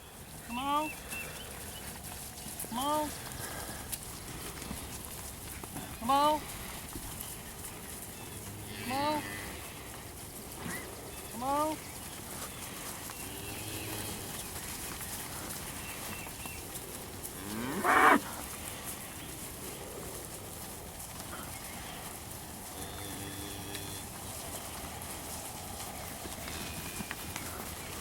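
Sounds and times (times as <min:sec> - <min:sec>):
cattle mooing: 0:17.4 - 0:18.3.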